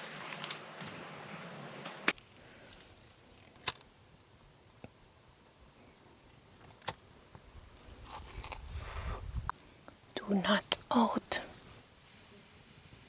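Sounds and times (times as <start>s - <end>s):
dry twigs snapping: 2.1s - 3.9s.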